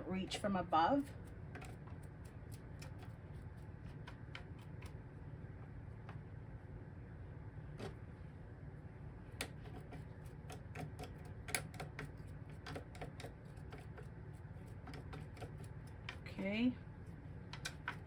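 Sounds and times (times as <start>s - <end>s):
brush clicking on metal: 9.4s - 16.3s.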